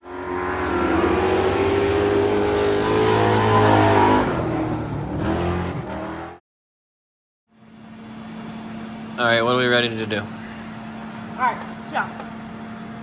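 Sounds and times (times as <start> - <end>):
race car engine revving: 0.0 - 6.4.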